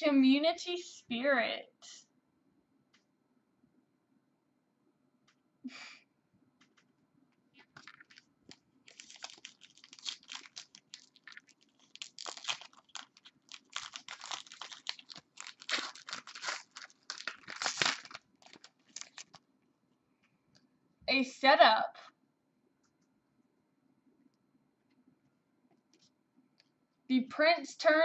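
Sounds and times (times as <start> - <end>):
foil wrapper crinkling and tearing: 7.6 - 19.4.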